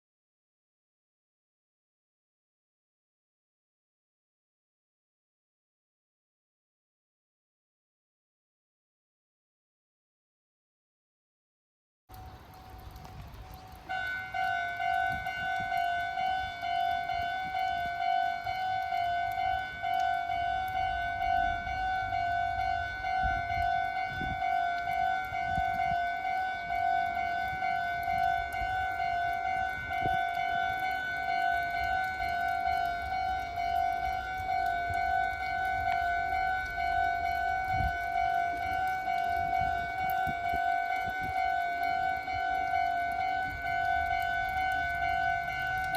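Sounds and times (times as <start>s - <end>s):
level crossing alarm ringing: 13.8s - 45.9s.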